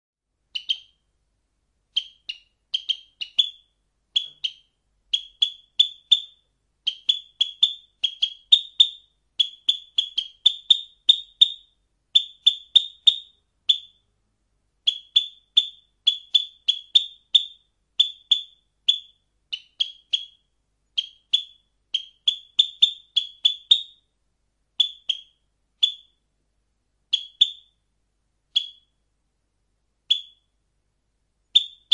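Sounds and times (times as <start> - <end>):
sparrow chirping: 0.5 - 1.1, 1.9 - 14.1, 14.8 - 24.1, 24.8 - 26.2, 27.1 - 27.8, 28.5 - 29.0, 30.1 - 30.6, 31.5 - 31.9.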